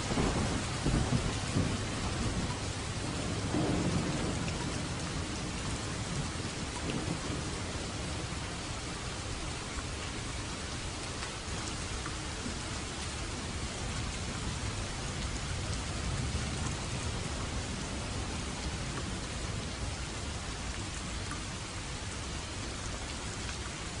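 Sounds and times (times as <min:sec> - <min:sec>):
steady rain: 0:00.0 - 0:24.0.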